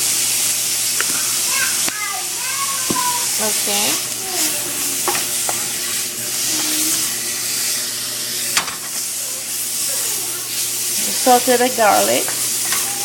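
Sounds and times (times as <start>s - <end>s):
chicken sizzling in a pan: 0.0s - 13.0s.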